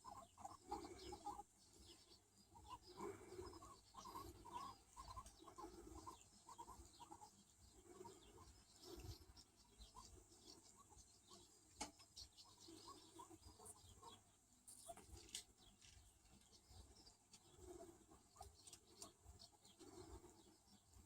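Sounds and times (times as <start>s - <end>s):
guinea pig squeaking: 0.0s - 1.4s, 2.5s - 16.0s.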